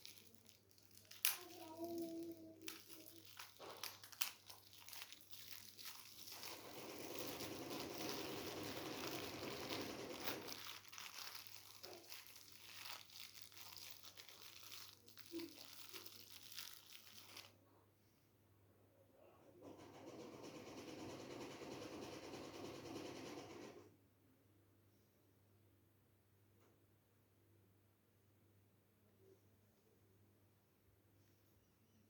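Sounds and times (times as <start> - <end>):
bedding rustling and crinkling: 0.0 - 17.5.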